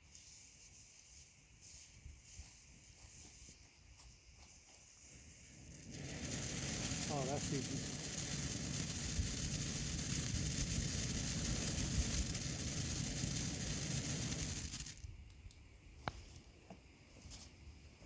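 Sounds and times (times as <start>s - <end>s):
firework fountain hissing and crackling: 1.2s - 15.5s.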